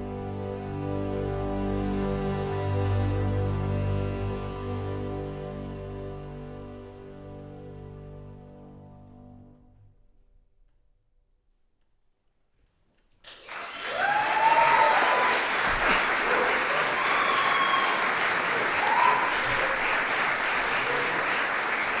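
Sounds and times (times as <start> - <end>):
audience applauding: 13.3 - 22.0
audience whooping: 13.4 - 22.0.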